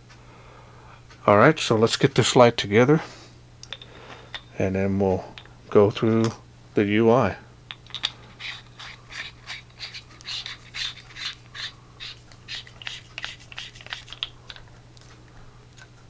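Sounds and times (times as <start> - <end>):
steady low hum: 0.0 - 16.0
flashlight parts clicking and scraping: 3.6 - 4.5, 7.7 - 15.2.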